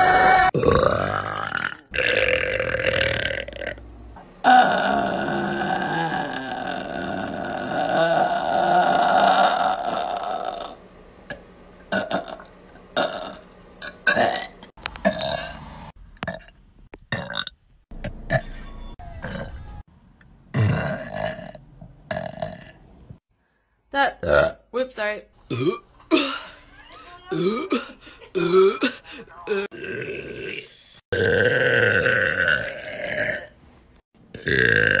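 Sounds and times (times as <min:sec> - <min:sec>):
people belching: 0:00.0 - 0:03.8, 0:04.4 - 0:10.8, 0:11.9 - 0:15.5, 0:19.2 - 0:19.6, 0:27.3 - 0:33.5, 0:34.3 - 0:35.0.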